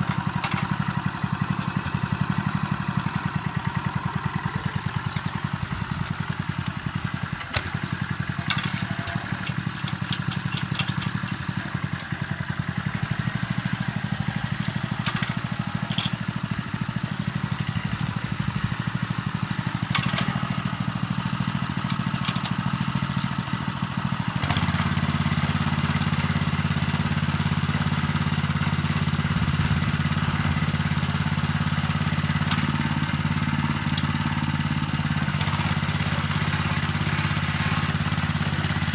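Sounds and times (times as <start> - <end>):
small engine running: 0.0 - 38.9
sharp clicks and clatter: 0.1 - 0.8, 6.0 - 12.2, 14.6 - 16.3, 19.8 - 23.4.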